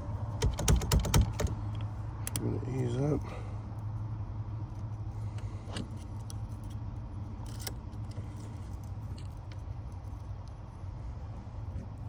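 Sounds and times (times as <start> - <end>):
steady low rumble: 1.3 - 12.0
metallic clicks of lock picking: 7.4 - 8.0.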